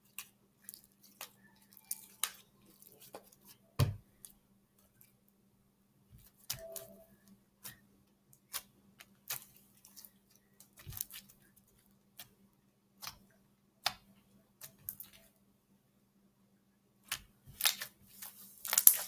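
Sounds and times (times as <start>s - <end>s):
slime clicks and snaps: 18.7s - 19.0s.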